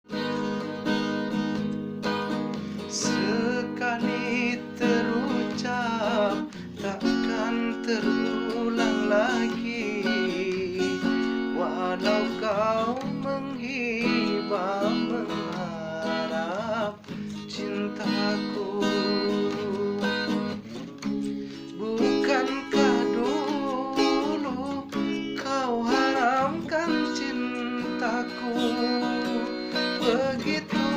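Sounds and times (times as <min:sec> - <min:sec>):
strummed acoustic guitar: 0:00.0 - 0:30.9
man singing with vibrato: 0:02.6 - 0:30.9.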